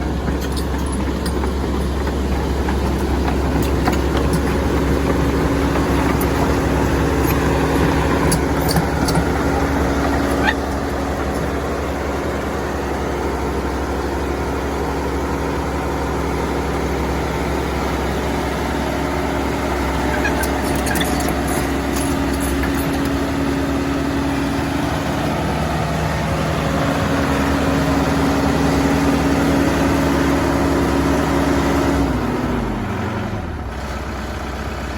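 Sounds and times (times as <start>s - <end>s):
excavator diesel engine running: 0.0s - 34.9s
metallic clicks and clanks: 0.1s - 11.7s, 20.0s - 23.4s.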